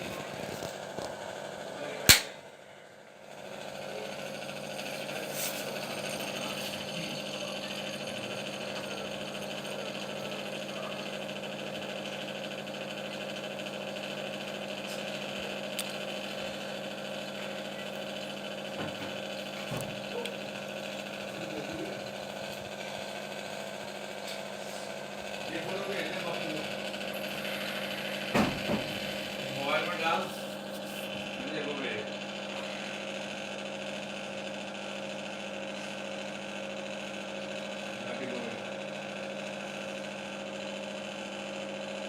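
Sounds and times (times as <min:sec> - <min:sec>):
steady mechanical hum: 0:00.0 - 0:42.0
sharp loud click: 0:02.1 - 0:02.4.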